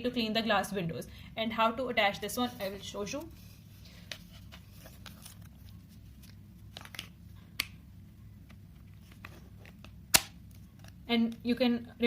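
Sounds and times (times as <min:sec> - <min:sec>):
loud plastic snap: 0:10.1 - 0:10.4.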